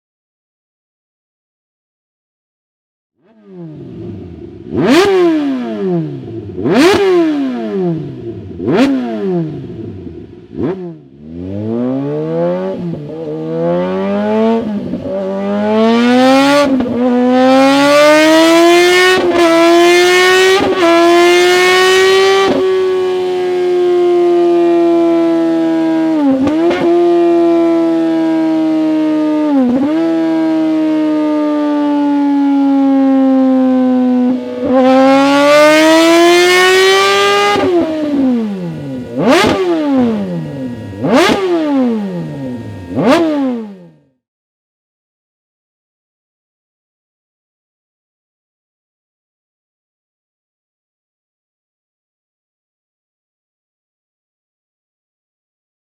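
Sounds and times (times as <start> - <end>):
motorcycle engine revving: 3.2 - 44.1.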